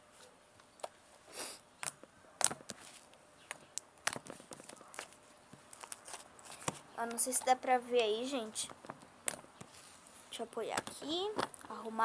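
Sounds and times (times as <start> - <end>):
woman talking: 7.0 - 8.7, 10.3 - 12.0.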